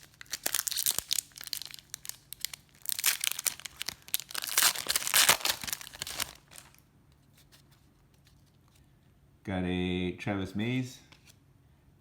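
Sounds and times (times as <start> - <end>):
wrapper tearing and crinkling: 0.0 - 6.8.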